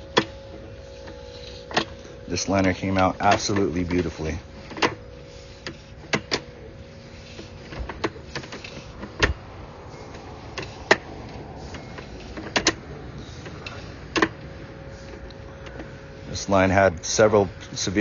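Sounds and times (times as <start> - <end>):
faint steady hum: 0.0 - 18.0
sharp clicks and knocks: 10.1 - 12.8, 13.4 - 14.5.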